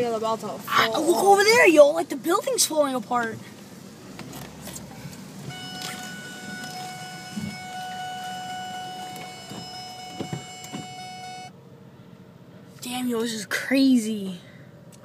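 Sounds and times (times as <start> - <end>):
street noise: 0.0 - 15.0
wind: 0.0 - 15.0
electronic alarm tone: 5.5 - 11.5.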